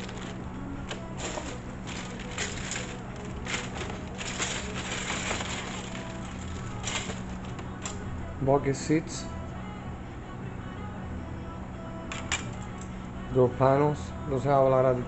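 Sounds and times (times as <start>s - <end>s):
plastic parts rustling and crackling: 0.0s - 8.0s.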